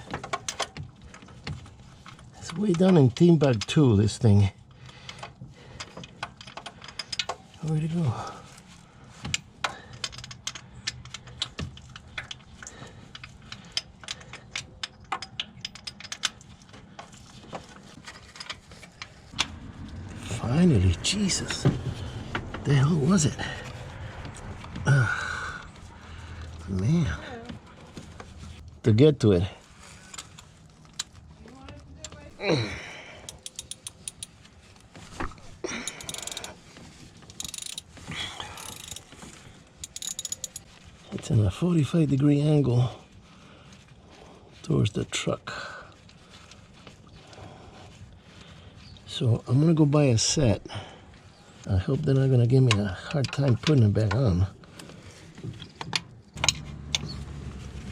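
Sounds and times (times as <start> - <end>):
metallic clicks of hand tools: 9.3 - 16.6, 33.2 - 34.4, 35.7 - 36.6, 37.3 - 39.2, 39.8 - 40.7, 55.8 - 57.2
metal tools knocking: 33.2 - 34.4, 35.7 - 36.6, 39.8 - 40.7
socket ratchet clicking: 33.2 - 34.4, 35.8 - 36.6, 37.3 - 38.0, 38.6 - 39.1, 39.8 - 40.7.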